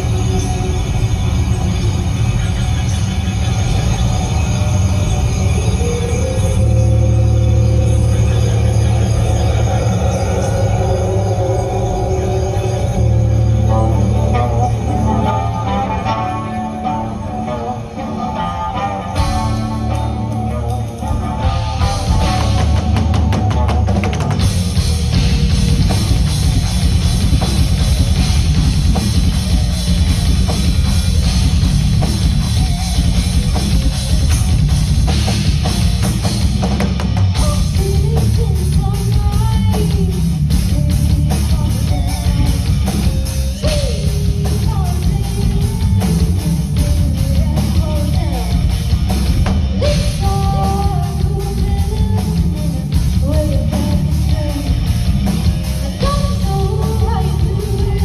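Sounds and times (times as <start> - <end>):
distorted electric guitar: 0.0 - 58.0
rock band playing live: 0.0 - 58.0
person singing: 4.6 - 24.4, 37.4 - 48.8, 49.8 - 55.1, 55.7 - 58.0.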